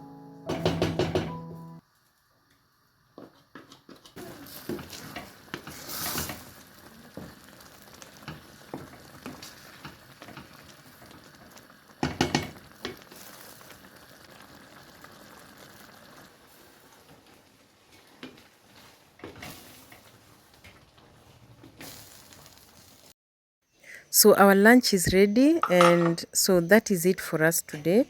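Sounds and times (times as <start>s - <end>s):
food sizzling in a pan: 1.8s - 23.2s.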